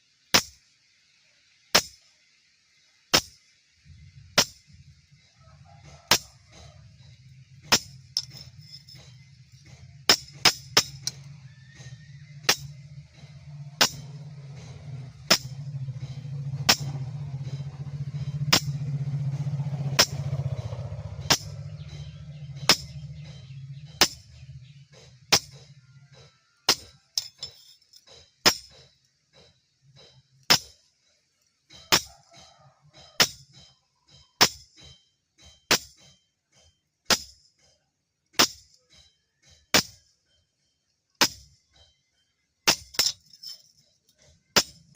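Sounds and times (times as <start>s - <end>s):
hammer striking metal anvil: 4.4s - 4.7s, 6.1s - 30.8s, 31.7s - 37.8s, 38.4s - 40.1s, 41.2s - 42.0s, 42.6s - 44.9s
low steady hum: 6.1s - 25.6s.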